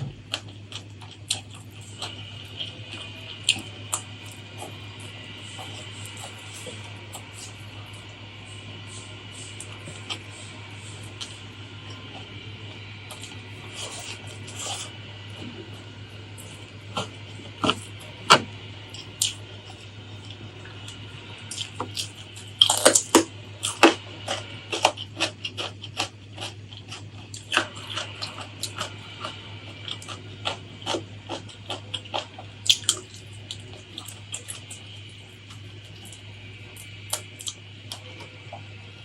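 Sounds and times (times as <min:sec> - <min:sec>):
steady low hum: 0:00.0 - 0:39.0
crisp chewing crunches: 0:00.1 - 0:08.1, 0:18.9 - 0:38.2.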